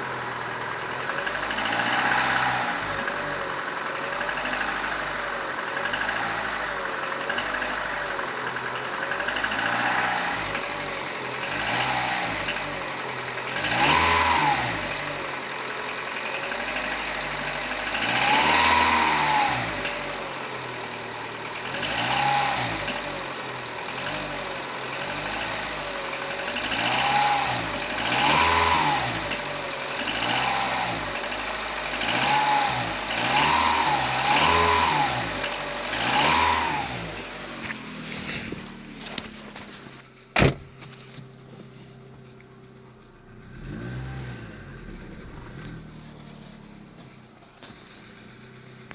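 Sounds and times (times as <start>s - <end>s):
engine knock: 0.0s - 36.4s
car engine revving: 0.0s - 48.9s.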